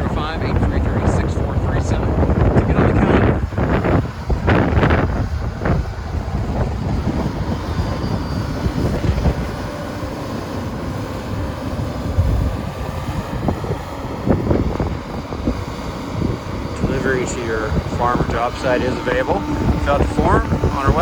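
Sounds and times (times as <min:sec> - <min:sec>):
excavator diesel engine rumbling: 0:00.0 - 0:21.0
wind noise on microphone: 0:00.0 - 0:21.0.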